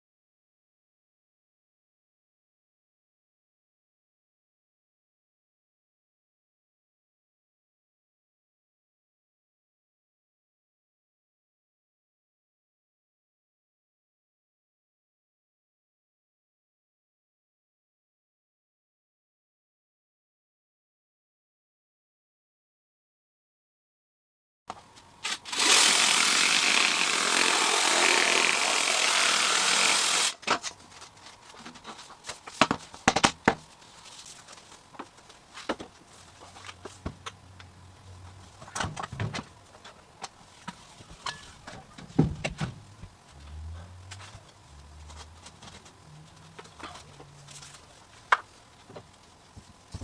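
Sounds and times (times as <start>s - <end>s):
power tool running: 25.2s - 30.5s
knocks and clicks of handled tools: 30.4s - 33.7s.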